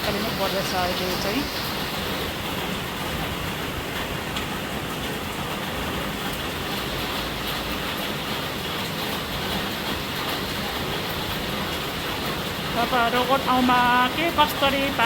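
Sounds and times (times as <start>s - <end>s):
rain hissing: 0.0s - 15.0s
faint raindrop ticks: 3.1s - 15.0s.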